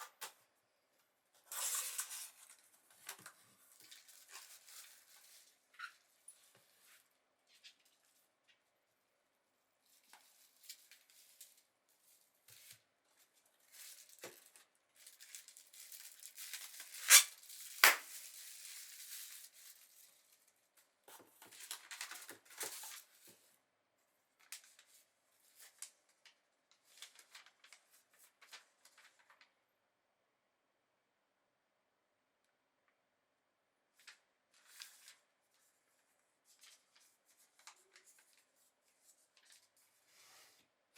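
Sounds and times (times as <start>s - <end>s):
cardboard and plastic rustling: 1.5s - 5.7s, 9.9s - 20.5s, 21.1s - 23.5s.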